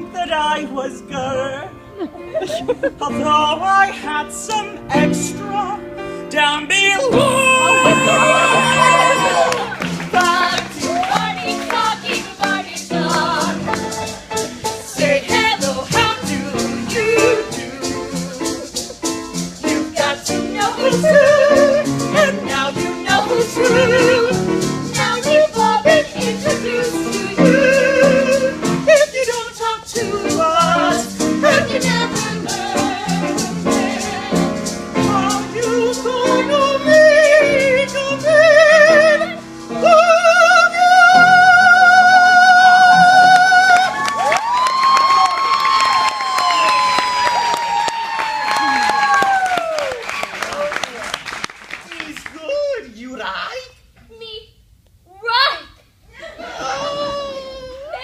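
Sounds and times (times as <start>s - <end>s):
operatic voice singing with vibrato: 3.0s - 13.8s, 20.0s - 43.9s.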